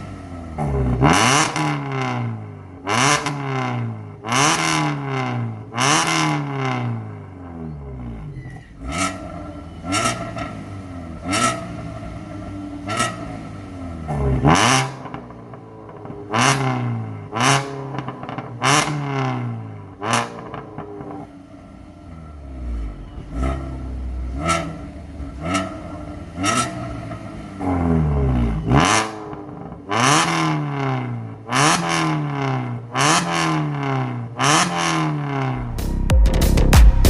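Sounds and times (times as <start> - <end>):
car engine revving: 0.0 - 37.0.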